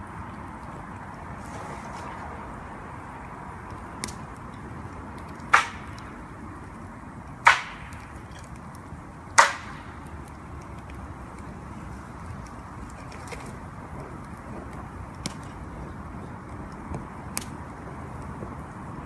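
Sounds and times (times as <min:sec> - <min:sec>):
chopping strokes on wood: 0:05.5 - 0:06.1, 0:07.4 - 0:08.1, 0:09.4 - 0:09.9.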